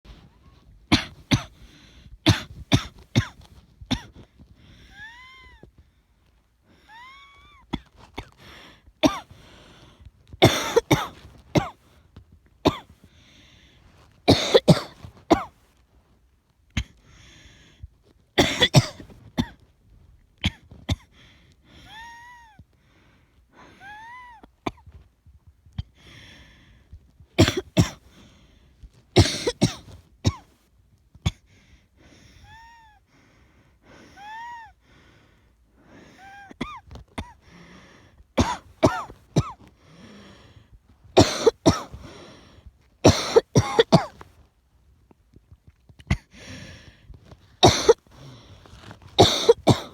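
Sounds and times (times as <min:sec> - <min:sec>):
person coughing harshly: 0:00.9 - 0:01.5, 0:02.2 - 0:04.2, 0:09.0 - 0:09.3, 0:10.4 - 0:11.8, 0:12.7 - 0:12.9, 0:14.3 - 0:15.5, 0:18.4 - 0:19.6, 0:27.4 - 0:28.0, 0:29.2 - 0:30.4, 0:38.4 - 0:39.6, 0:41.2 - 0:42.0, 0:43.1 - 0:44.2, 0:47.6 - 0:48.0, 0:49.2 - 0:49.9.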